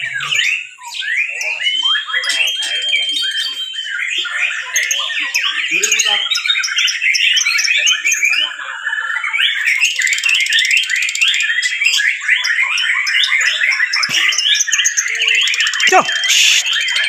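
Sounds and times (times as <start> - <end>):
songbirds singing in chorus: 0.0 - 17.0
fast buzzy bird trill: 15.2 - 17.0.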